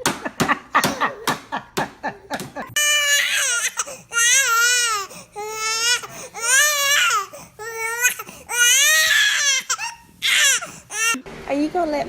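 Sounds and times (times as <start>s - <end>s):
baby crying: 2.8s - 11.2s.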